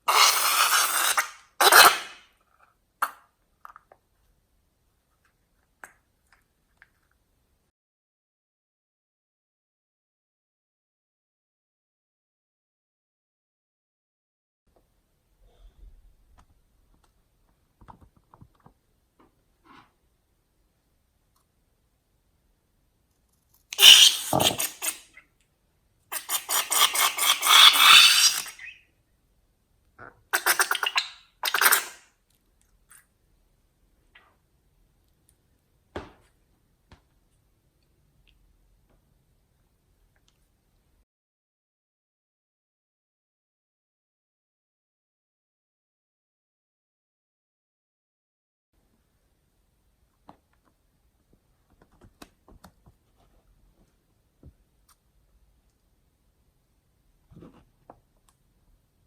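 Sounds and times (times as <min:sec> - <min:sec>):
faint small clicks and taps: 0:16.4 - 0:19.4.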